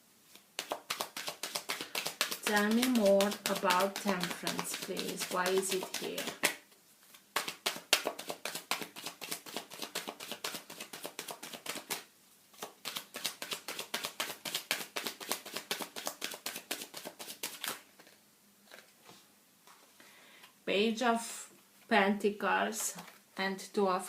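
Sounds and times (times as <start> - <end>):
cards being shuffled: 0.3 - 19.0.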